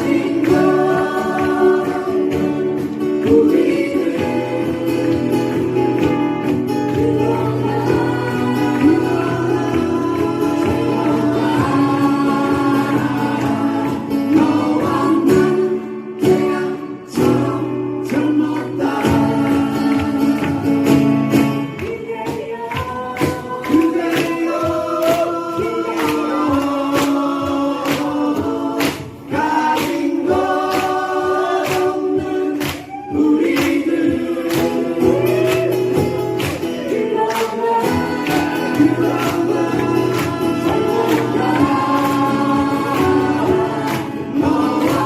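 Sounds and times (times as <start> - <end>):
voices singing: 0.0 - 45.0
band with steady beat: 19.0 - 45.0.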